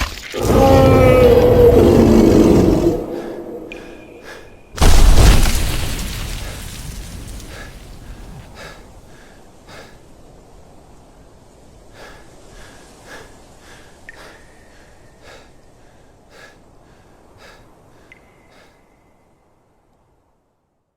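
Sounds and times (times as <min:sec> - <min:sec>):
low hollow ambience: 0:00.4 - 0:05.8.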